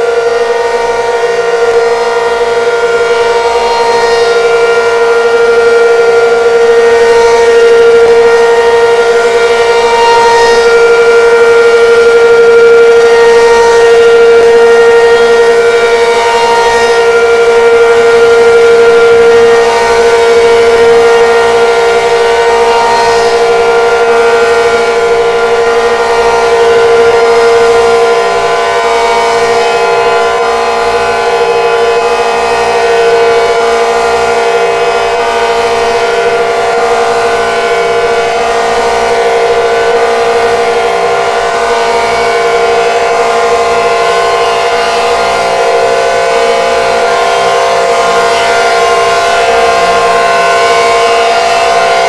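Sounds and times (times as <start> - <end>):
warning siren steady tone: 0.0 - 52.0.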